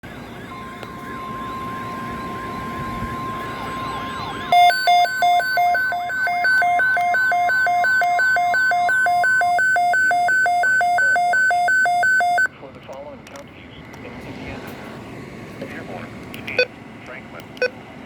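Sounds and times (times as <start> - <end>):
siren-like sweep: 0.0 - 12.5
steady high tone: 0.1 - 12.5
electronic two-tone alarm: 0.2 - 12.5.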